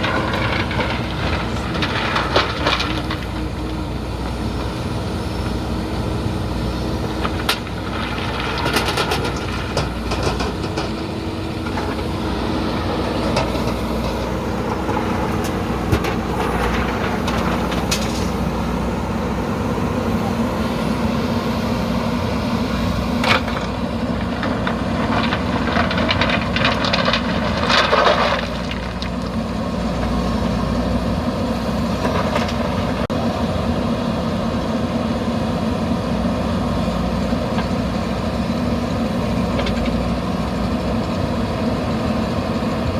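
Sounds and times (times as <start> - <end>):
gravel rattling in bucket: 0.0 - 4.8, 6.6 - 33.2
diesel engine running: 0.0 - 42.9.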